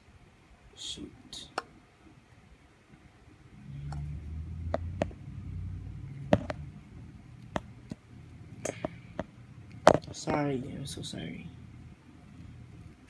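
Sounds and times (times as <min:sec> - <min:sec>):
low rumble: 0:03.5 - 0:08.6.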